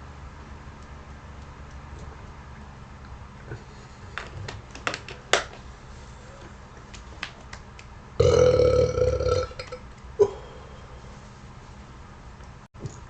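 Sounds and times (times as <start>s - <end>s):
man burping: 8.2s - 10.5s.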